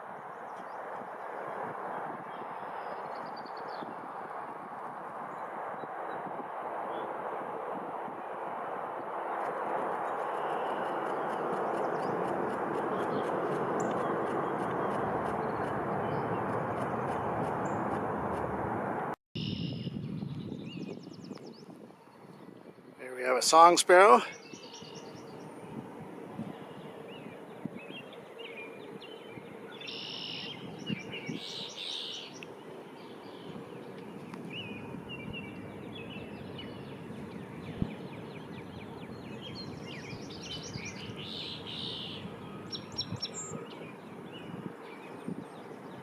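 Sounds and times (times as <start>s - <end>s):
sparrow singing: 19.4s - 22.5s, 23.2s - 25.8s, 26.4s - 46.0s.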